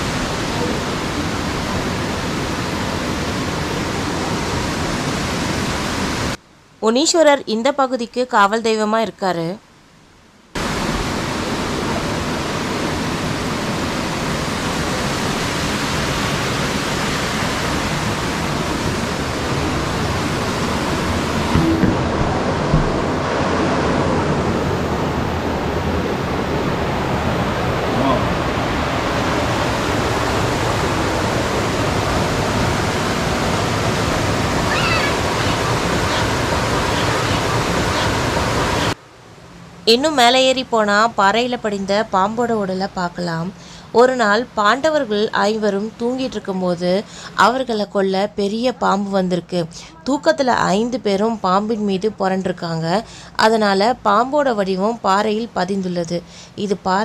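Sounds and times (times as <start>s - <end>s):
water pouring down a waterfall: 29.4s - 38.9s.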